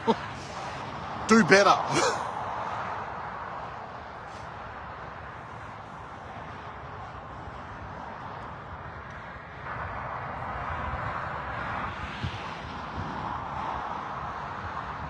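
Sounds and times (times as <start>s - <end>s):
road traffic passing: 0.0s - 2.8s.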